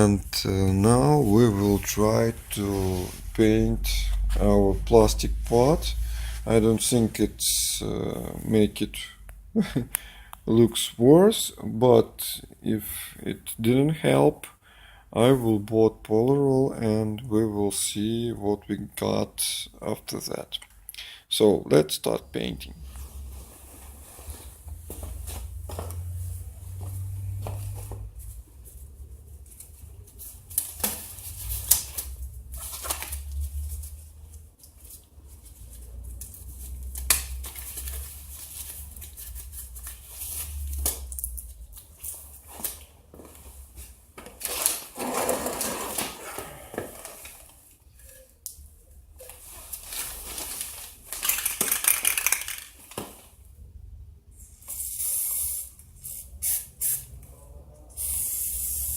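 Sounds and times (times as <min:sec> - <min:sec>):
hissing or rustling noise: 0:01.1 - 0:04.3
hard objects clinking and knocking: 0:51.2 - 0:52.7.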